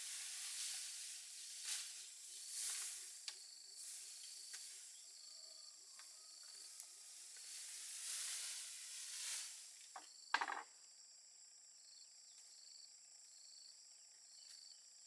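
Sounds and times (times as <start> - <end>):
hissing noise: 0.0 - 4.6
insect-like chirp: 0.0 - 15.0.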